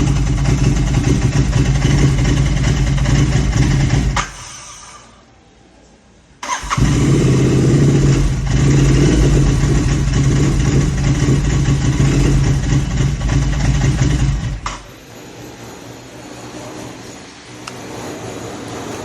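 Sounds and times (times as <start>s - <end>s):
motorcycle engine idling and stalling: 0.0s - 4.6s, 6.4s - 19.0s
motorcycle engine restarting: 0.0s - 4.7s, 6.4s - 15.0s.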